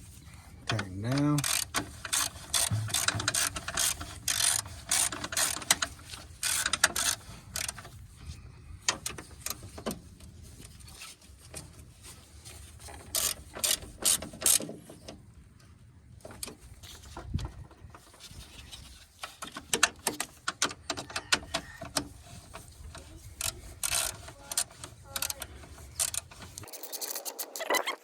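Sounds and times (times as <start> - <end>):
hand ratchet clicking: 1.4 - 7.8, 13.1 - 14.6, 19.4 - 27.4.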